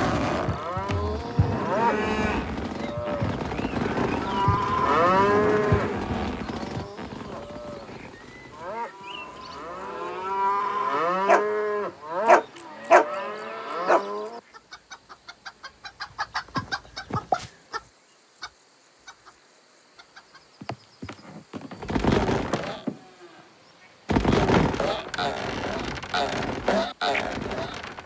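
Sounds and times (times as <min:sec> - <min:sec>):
rapid clicks: 0:00.0 - 0:08.5
cartoon chickens clucking: 0:14.5 - 0:19.3.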